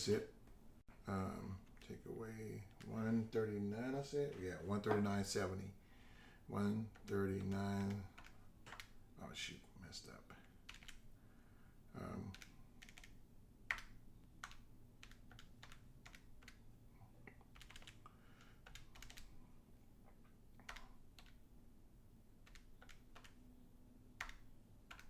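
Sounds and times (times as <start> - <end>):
calculator keys clicking: 10.7 - 11.0, 12.3 - 16.6, 17.5 - 19.3, 22.5 - 23.4, 24.2 - 25.0.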